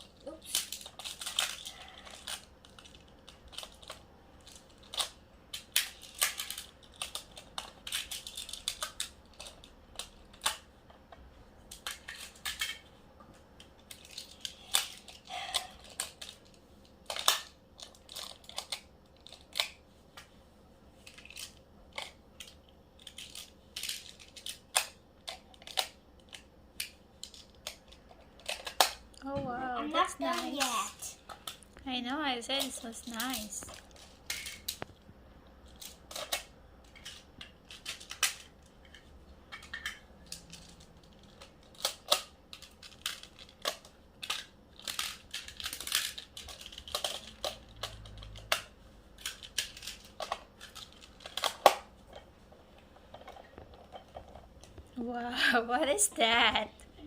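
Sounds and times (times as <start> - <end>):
plastic tiles clicking together: 39.6 - 51.8.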